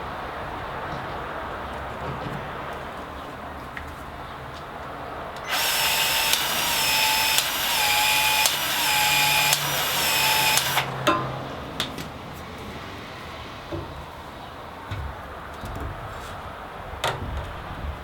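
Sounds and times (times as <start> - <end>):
power tool motor whirring: 5.4 - 11.0
tool clicking: 5.4 - 11.2.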